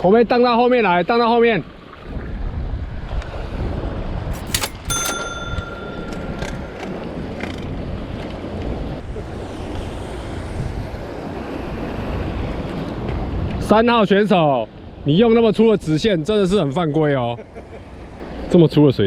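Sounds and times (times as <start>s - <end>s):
sharp clicks: 4.4s - 7.7s
clear ringing tone: 4.4s - 7.9s.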